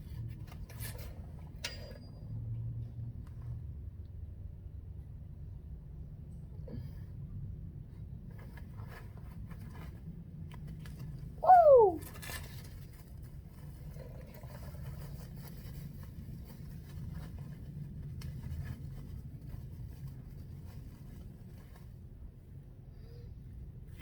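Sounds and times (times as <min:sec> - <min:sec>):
rustling and scratching of parts: 0:00.0 - 0:02.1, 0:07.9 - 0:22.6.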